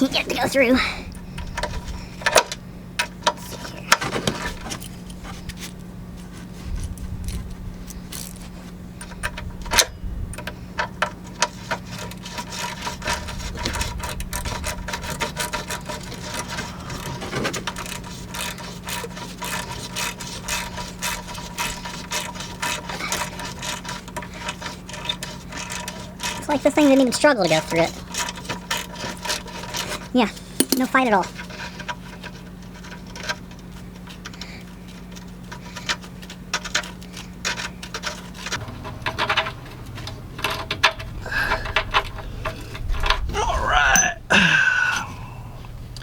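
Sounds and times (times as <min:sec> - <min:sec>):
steady low hum: 0:00.0 - 0:46.0.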